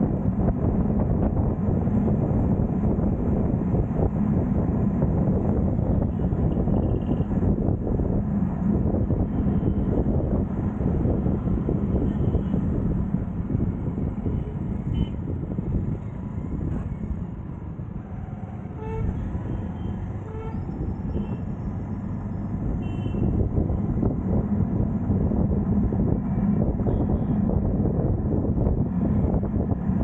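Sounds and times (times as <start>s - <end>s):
road traffic rumble: 0.0s - 30.0s
vehicle horn toots: 22.8s - 23.4s.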